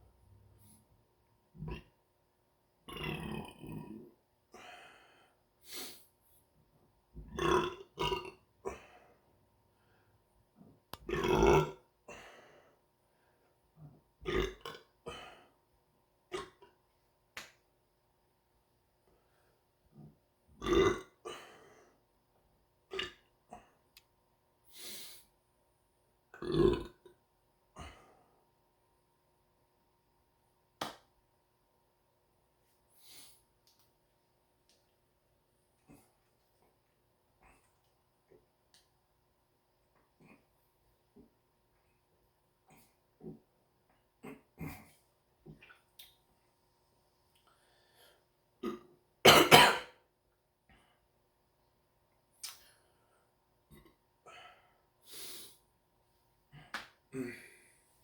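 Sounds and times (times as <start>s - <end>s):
person burping: 1.6s - 1.9s, 2.9s - 4.7s, 7.2s - 9.0s, 11.0s - 12.2s, 14.2s - 15.5s, 16.3s - 16.7s, 20.6s - 21.6s, 22.9s - 23.6s, 26.3s - 27.1s, 48.6s - 50.0s, 57.1s - 57.6s.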